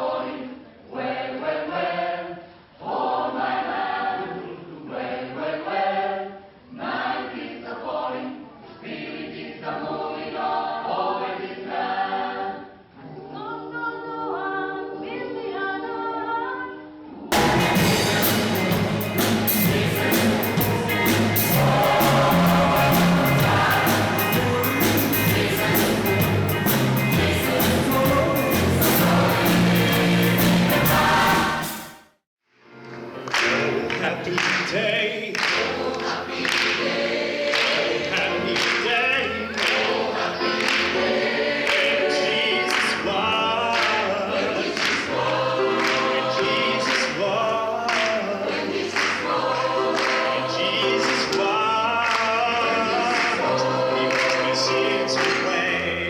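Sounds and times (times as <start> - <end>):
gospel choir singing: 0.0 - 32.0, 33.2 - 56.0
instrumental backing with bass: 17.3 - 32.0.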